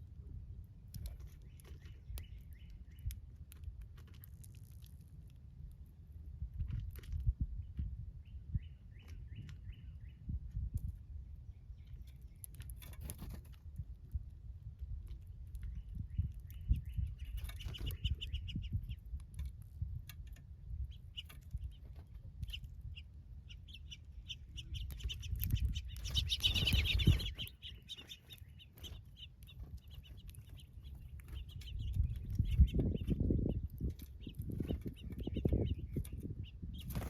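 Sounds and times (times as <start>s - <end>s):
birds chirping: 1.0s - 3.5s, 7.5s - 10.6s, 11.3s - 13.0s, 15.2s - 19.6s, 20.2s - 37.0s.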